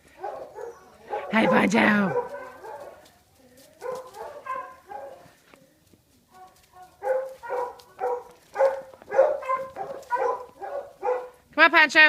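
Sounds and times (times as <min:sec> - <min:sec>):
dog barking: 0:00.1 - 0:03.0, 0:03.8 - 0:05.3, 0:06.4 - 0:11.4.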